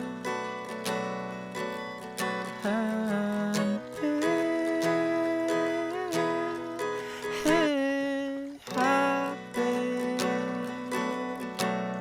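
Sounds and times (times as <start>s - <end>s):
acoustic guitar strumming: 0.0s - 12.0s
person singing a wavering note: 2.6s - 12.0s.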